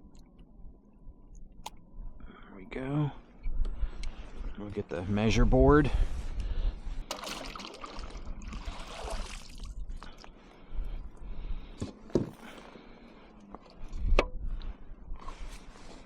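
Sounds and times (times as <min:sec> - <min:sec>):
water splashing and dripping: 0:07.1 - 0:09.8.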